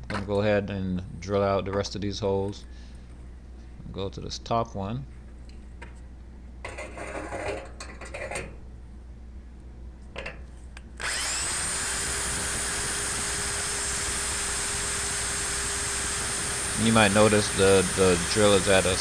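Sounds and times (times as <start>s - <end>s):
hammer drill boring into concrete: 11.0s - 19.0s.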